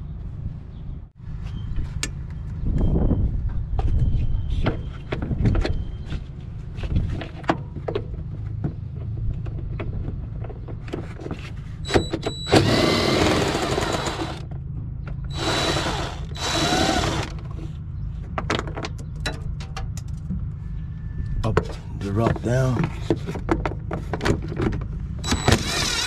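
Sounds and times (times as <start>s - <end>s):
power tool running: 12.5s - 14.4s, 15.3s - 17.4s, 25.3s - 26.0s.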